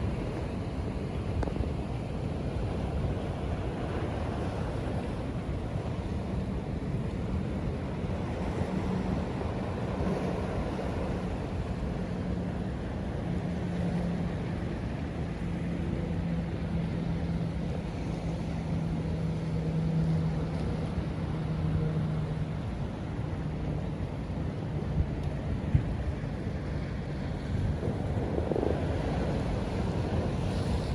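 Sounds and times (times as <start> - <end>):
low engine hum: 0.0 - 30.9
ocean waves washing: 0.0 - 30.9
wind buffeting microphone: 23.8 - 30.9.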